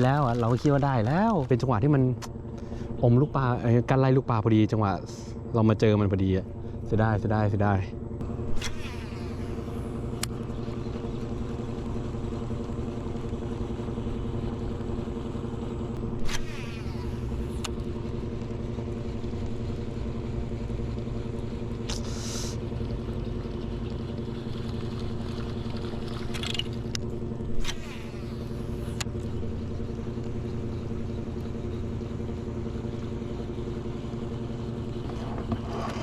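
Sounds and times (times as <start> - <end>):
boat motor running: 0.0 - 36.0
brief hiss: 21.9 - 22.6.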